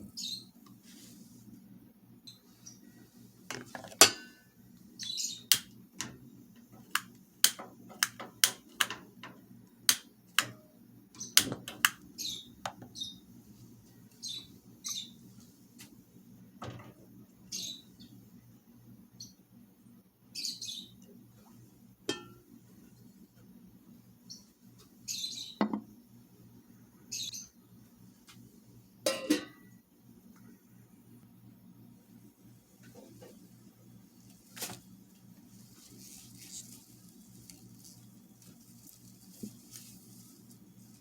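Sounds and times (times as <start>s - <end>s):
low steady hum: 0.0s - 20.3s, 21.0s - 25.0s
utensils clinking against dishes: 3.8s - 4.5s, 29.1s - 29.7s.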